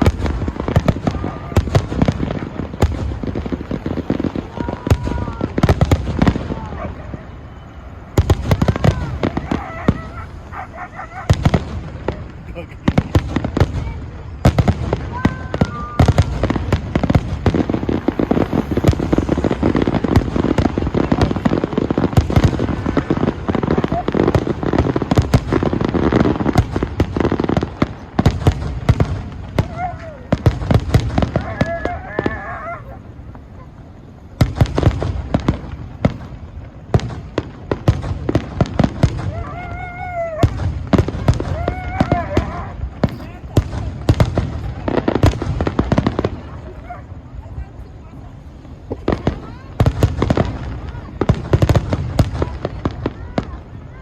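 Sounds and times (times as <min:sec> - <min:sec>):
firework whistles: 0:00.0 - 0:54.0
fireworks bangs and crackling: 0:00.0 - 0:54.0
held pitched call: 0:15.4 - 0:21.9.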